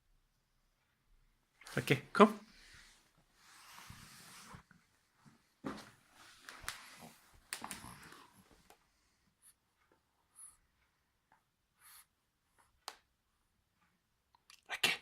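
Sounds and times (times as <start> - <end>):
puppy breathing softly: 6.2 - 11.0.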